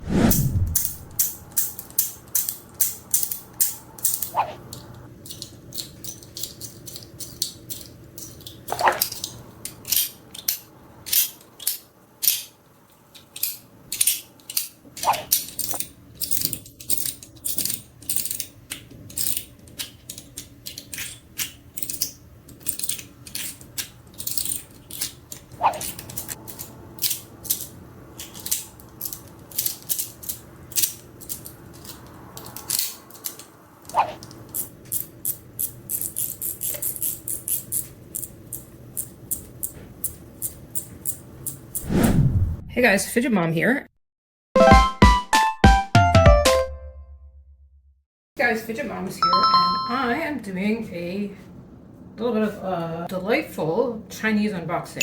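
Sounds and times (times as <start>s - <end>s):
fidget toys clicking: 1.2s - 12.5s, 13.1s - 41.8s
ringing notes dropping in pitch: 49.2s - 50.2s.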